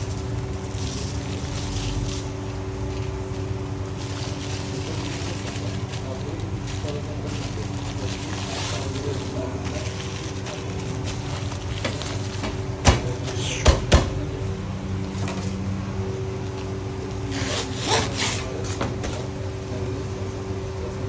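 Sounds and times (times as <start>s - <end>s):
steady machine hum: 0.0s - 21.0s
sharp knocks: 12.4s - 14.3s
scraping and rubbing: 16.6s - 19.4s.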